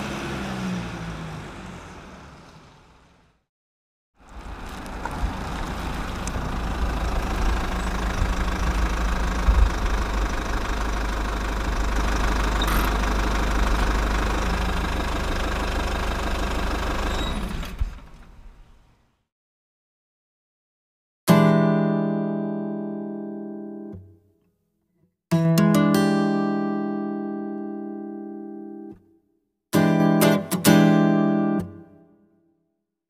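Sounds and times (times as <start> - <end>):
vehicle engine rumbling: 0.0 - 3.4, 4.2 - 19.0.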